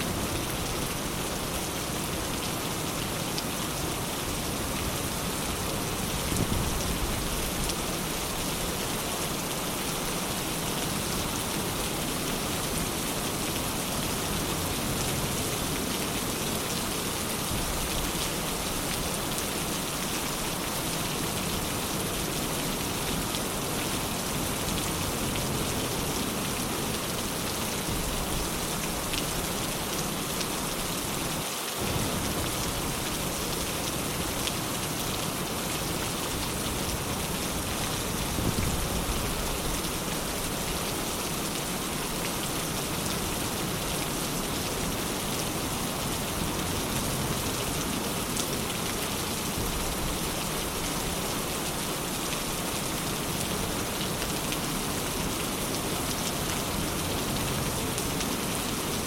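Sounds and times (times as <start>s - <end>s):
steady rain falling: 0.0s - 59.0s.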